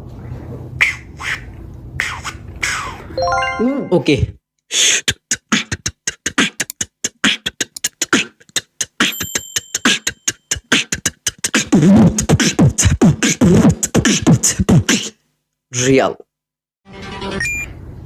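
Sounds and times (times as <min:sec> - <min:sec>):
beatboxing mouth clicks: 0:00.8 - 0:03.0, 0:04.7 - 0:15.2
wavering voiced mouth sounds: 0:04.7 - 0:15.2
thin high mouth tones: 0:07.4 - 0:12.2.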